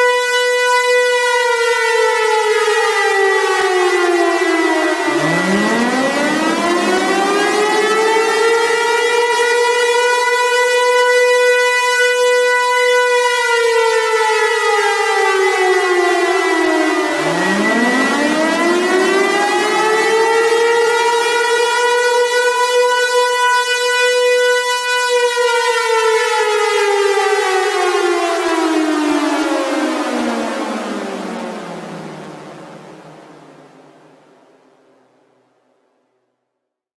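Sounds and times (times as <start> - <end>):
tornado siren wailing: 0.0 - 34.7
steady high tone: 4.5 - 8.8, 16.5 - 20.2.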